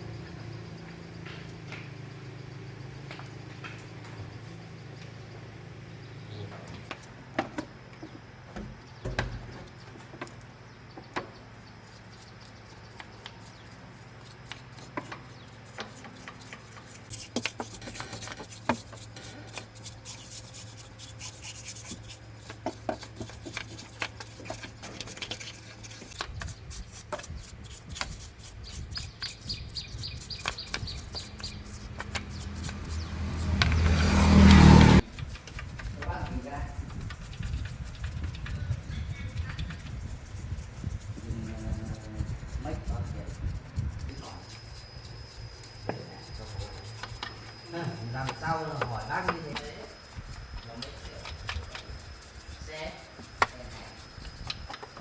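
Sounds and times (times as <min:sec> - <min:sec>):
rubbing: 0:11.7 - 0:55.0.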